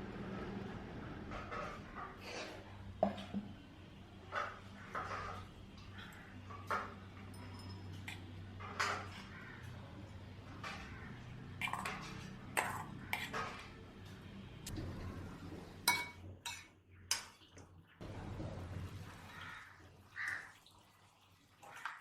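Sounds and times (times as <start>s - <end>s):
dishes and cutlery clinking: 4.3s - 9.7s, 10.5s - 13.8s, 15.8s - 17.6s.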